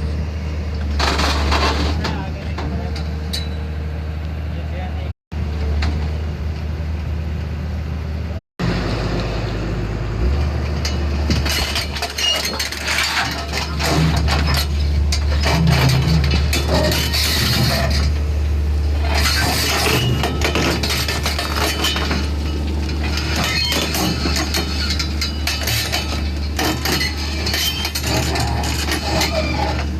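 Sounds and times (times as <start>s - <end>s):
excavator diesel engine drone: 0.0s - 29.9s
metallic clanking and rattling: 0.9s - 3.7s, 10.4s - 29.9s.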